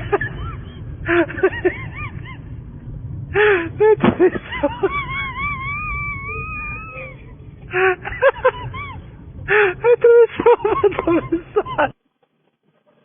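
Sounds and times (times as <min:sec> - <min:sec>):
low rumble: 0:00.0 - 0:12.0
voices shouting and whooping: 0:05.0 - 0:07.4
long high-pitched cry: 0:05.3 - 0:07.3.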